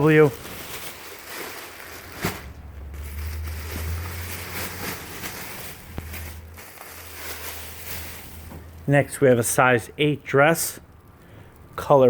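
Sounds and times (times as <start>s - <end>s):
fabric rustling and crinkling: 0.0s - 9.2s.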